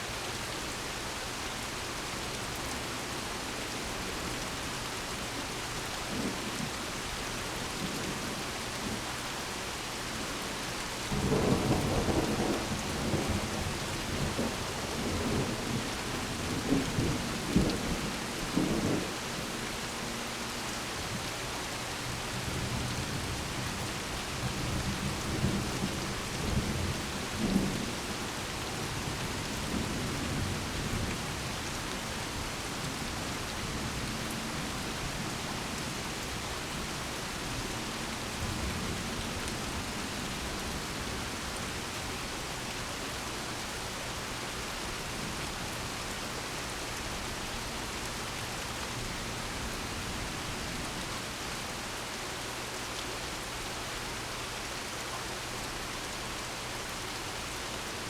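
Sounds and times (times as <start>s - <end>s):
steady rain: 0.0s - 58.0s
thunder rumbling: 11.1s - 20.2s.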